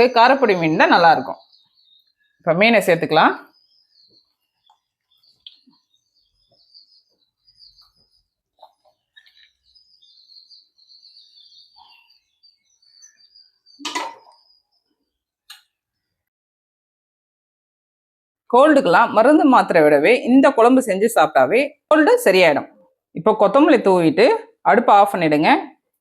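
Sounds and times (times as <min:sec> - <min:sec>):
small birds chirping: 0:00.0 - 0:16.3.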